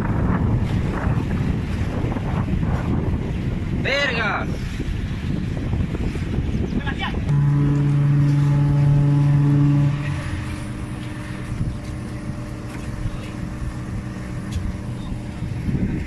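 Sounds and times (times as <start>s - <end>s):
engine rumbling: 4.6s - 16.0s
horn blast: 7.3s - 11.6s.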